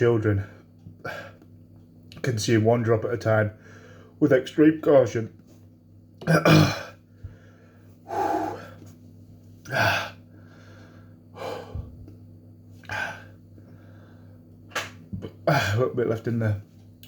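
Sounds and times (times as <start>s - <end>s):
man panting and gasping: 8.1s - 8.8s.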